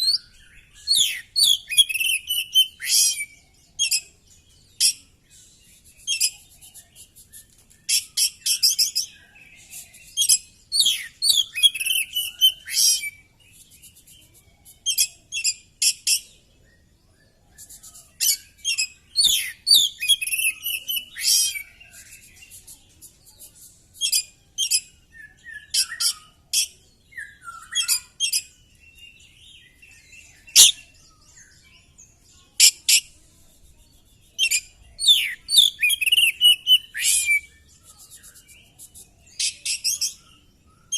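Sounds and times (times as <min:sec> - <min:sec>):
bird singing whistles and trills: 0:00.0 - 0:33.2, 0:33.8 - 0:40.9.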